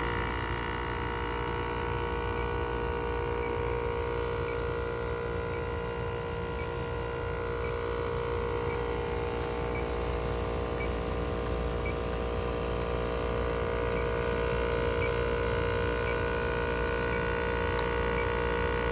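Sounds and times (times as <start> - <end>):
heat pump humming: 0.0 - 18.9
faint ticking: 1.6 - 18.5.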